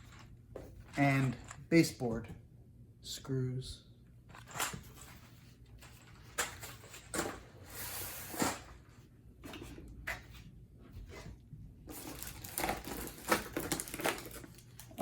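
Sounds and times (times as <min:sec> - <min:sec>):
plastic bags and cardboard rustling: 0:04.3 - 0:15.0.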